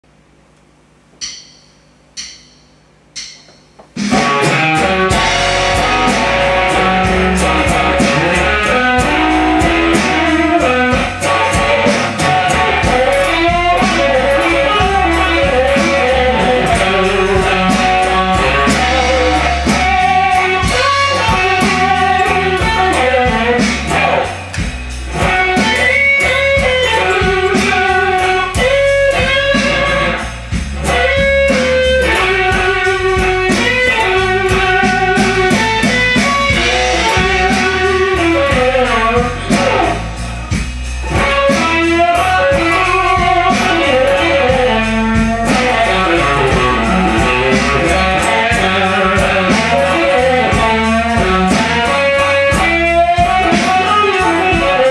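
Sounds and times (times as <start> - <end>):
electric guitar lead lines: 0.1 - 54.9
sharp count-in clicks: 0.5 - 3.8
slow blues band: 2.2 - 54.9.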